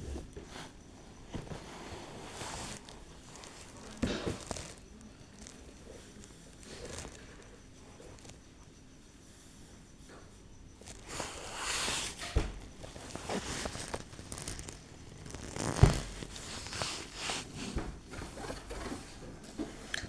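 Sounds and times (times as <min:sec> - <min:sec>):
rustling and handling noises: 0:00.0 - 0:20.0.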